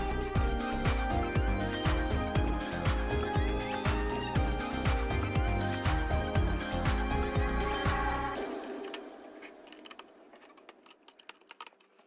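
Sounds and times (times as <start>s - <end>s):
kick drum beat: 0.0s - 8.4s
held synth tones: 0.0s - 10.4s.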